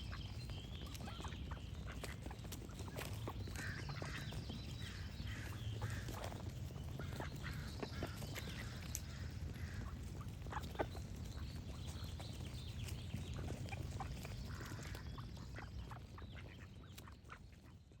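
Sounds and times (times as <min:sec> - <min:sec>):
low background rumble: 0:00.0 - 0:17.9
songbirds chirping: 0:00.0 - 0:18.0
ducks quacking: 0:03.3 - 0:11.0, 0:13.4 - 0:17.8.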